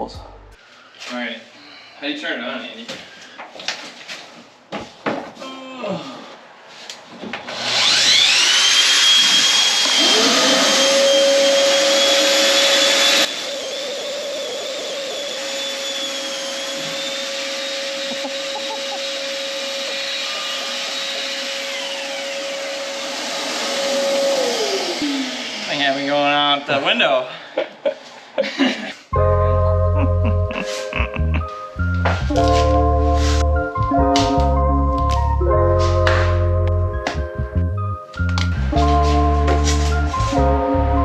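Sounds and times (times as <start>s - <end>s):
power tool motor whining: 7.5s - 26.3s.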